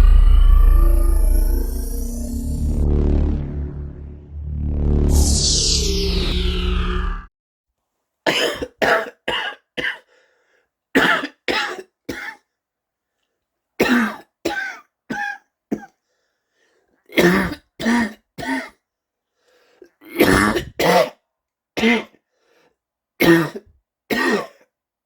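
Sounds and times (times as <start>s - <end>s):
person coughing: 8.3s - 10.1s, 11.0s - 12.4s, 13.8s - 16.0s, 17.1s - 18.8s, 20.1s - 21.2s, 21.8s - 22.2s, 23.2s - 24.7s.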